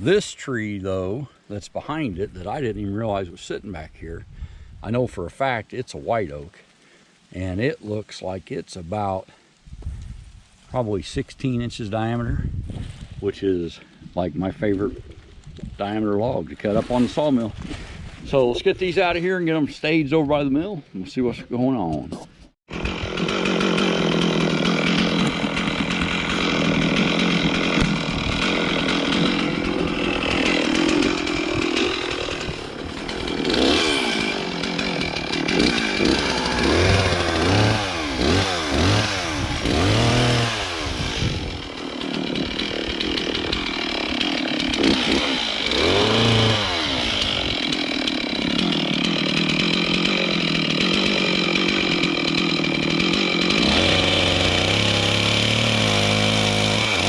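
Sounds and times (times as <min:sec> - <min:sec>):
chainsaw running and revving: 0:16.7 - 0:17.5, 0:22.7 - 0:57.0.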